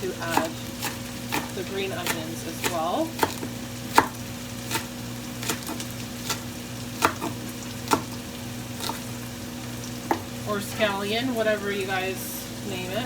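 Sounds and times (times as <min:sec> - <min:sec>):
vegetables sizzling in oil: 0:00.0 - 0:13.0
utensil knocking against pan: 0:07.0 - 0:08.2.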